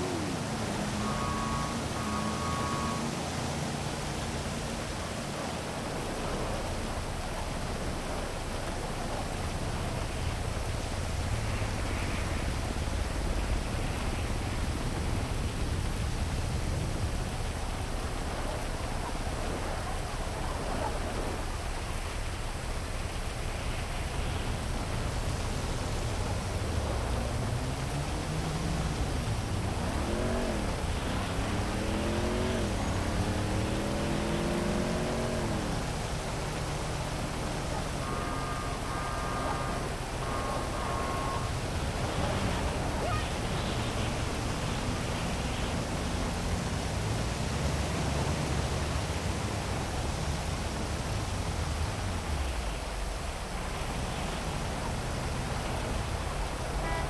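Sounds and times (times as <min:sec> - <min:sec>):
vehicle engine revving: 0:00.0 - 0:08.3, 0:24.2 - 0:57.0
heavy rain falling: 0:00.0 - 0:57.0
traffic rumble: 0:00.0 - 0:57.0.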